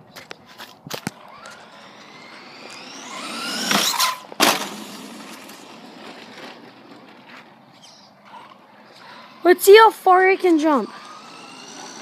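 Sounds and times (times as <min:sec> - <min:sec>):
rc car motor whining: 0:00.9 - 0:12.0.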